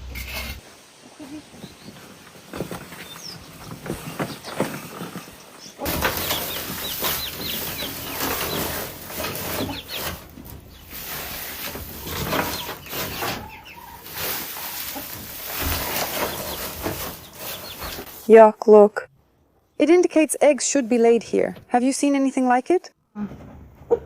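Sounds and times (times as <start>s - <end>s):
rustling: 0.0s - 18.5s
chickens clucking: 1.1s - 18.2s, 23.7s - 24.0s.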